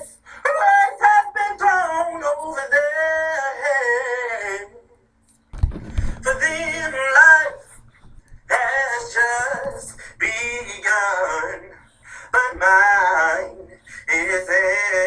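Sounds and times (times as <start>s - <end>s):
person singing: 6.2s - 7.8s, 8.5s - 15.0s.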